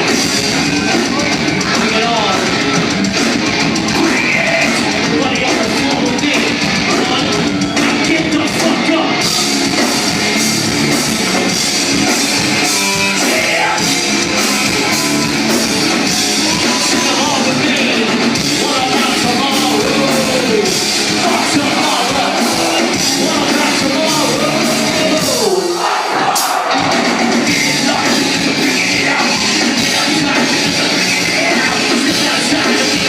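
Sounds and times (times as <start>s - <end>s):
distorted guitars: 0.0s - 33.0s
drums: 0.0s - 33.0s
person singing: 3.7s - 9.4s, 12.7s - 25.8s, 26.8s - 33.0s.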